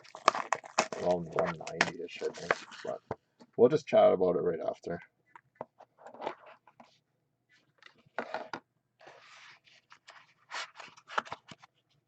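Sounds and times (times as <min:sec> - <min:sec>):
trading cards scraping and rustling: 0:00.1 - 0:03.1, 0:05.3 - 0:07.0, 0:07.6 - 0:11.8.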